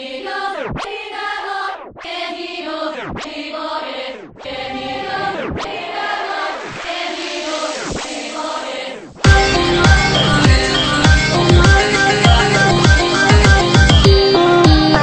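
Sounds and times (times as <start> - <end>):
choir-like chanting music: 0.0 - 13.1
falling swoop: 4.4 - 8.8.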